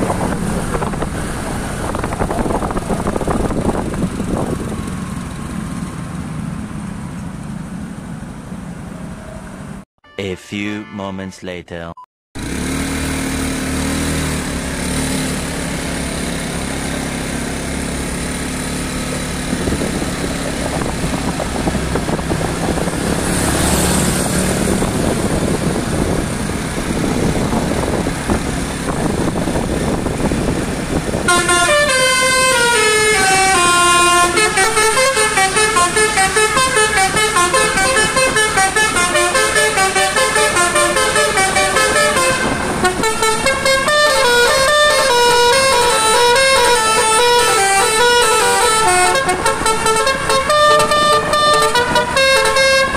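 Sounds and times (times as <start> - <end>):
street noise: 0.0 - 52.9
multi-tone car horn tune: 31.3 - 52.9.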